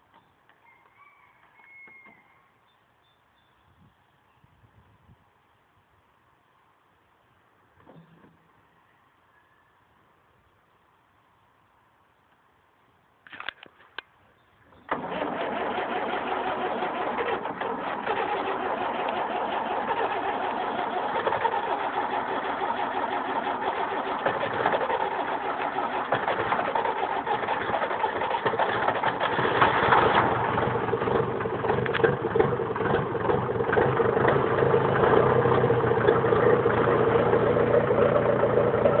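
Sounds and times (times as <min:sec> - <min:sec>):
diesel tractor engine idling: 0:14.9 - 0:39.0.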